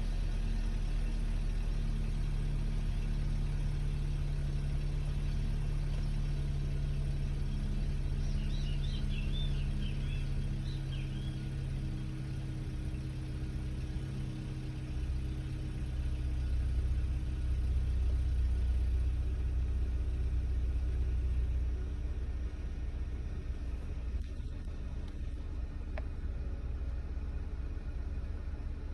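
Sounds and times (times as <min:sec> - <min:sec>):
car engine idling: 0:00.0 - 0:28.9.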